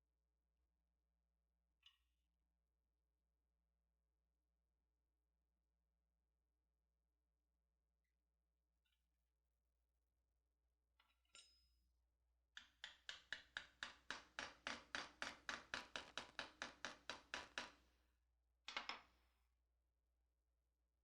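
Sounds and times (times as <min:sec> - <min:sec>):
hammer tapping metal: 0:12.6 - 0:17.8.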